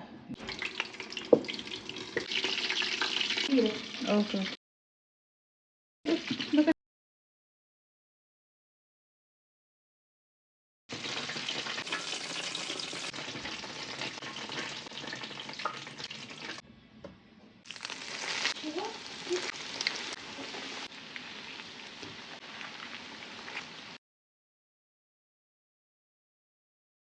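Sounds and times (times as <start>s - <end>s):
food deep-frying in hot oil: 0.4s - 4.6s, 6.1s - 6.7s, 10.9s - 16.6s, 17.7s - 24.0s.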